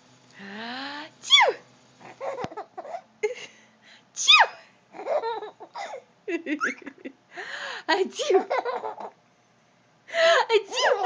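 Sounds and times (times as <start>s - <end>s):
baby giggling: 2.0s - 3.1s, 4.9s - 6.0s, 8.2s - 9.2s, 10.6s - 11.0s
woman sneezing: 10.4s - 11.0s.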